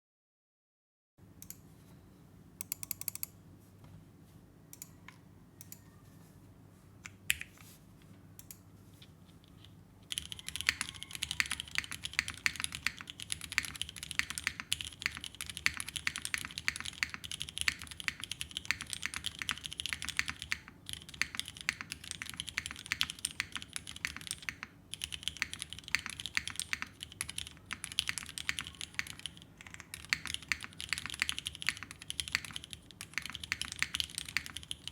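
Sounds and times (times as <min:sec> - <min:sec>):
typing on mechanical keyboard: 0:10.0 - 0:34.9.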